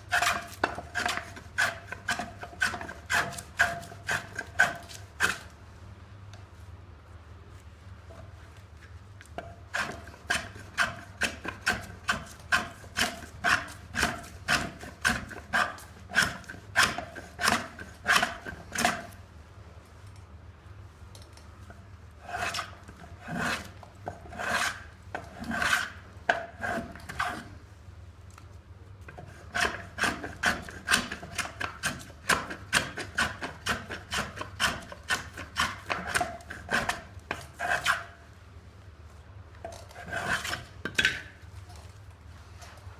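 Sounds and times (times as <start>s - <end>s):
hand plane shaving wood: 0.1s - 5.4s, 9.7s - 19.2s, 22.2s - 27.5s, 29.1s - 38.1s, 40.0s - 41.2s.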